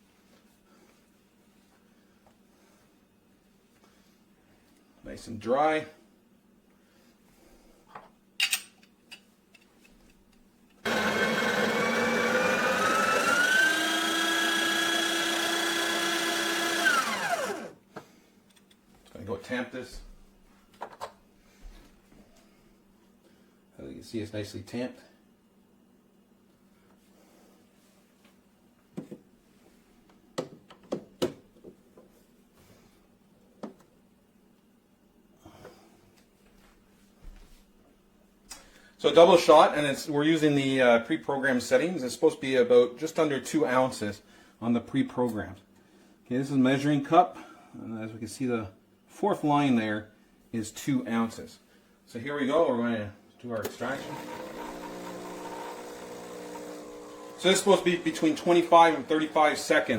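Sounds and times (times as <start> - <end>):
coffee grinder whining: 10.8 - 17.8, 53.6 - 59.9.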